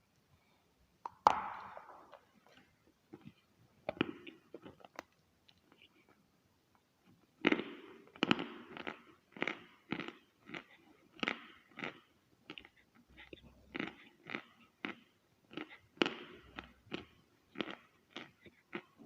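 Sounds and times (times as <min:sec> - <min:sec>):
crunchy chewing: 0:07.4 - 0:19.0.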